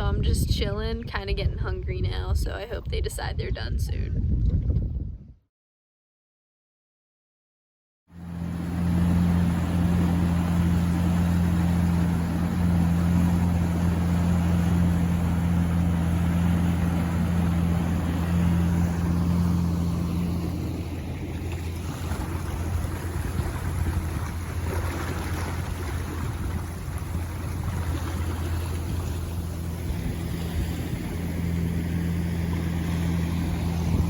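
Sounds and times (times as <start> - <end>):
jet ski engine running: 8.1 - 34.0
water rushing: 8.2 - 34.0.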